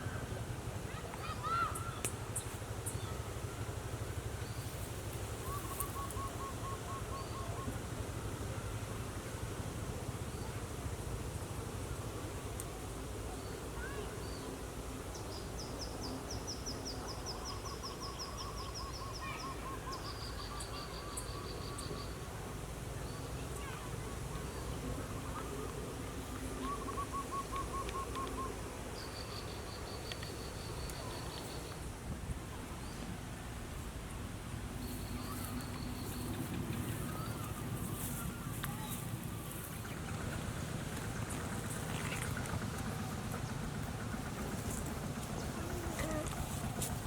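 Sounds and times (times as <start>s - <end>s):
soft pulsed bird calls: 26.6s - 31.8s
steady low rumble: 28.6s - 47.0s.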